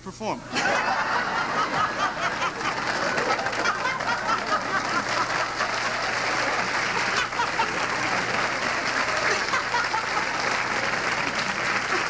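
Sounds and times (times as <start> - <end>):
studio audience laughing: 0.5 - 12.0
audience applauding: 0.6 - 12.0.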